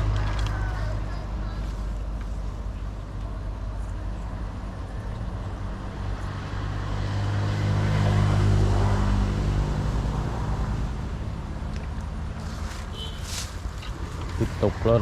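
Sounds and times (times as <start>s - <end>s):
motor engine passing by: 5.1s - 15.0s.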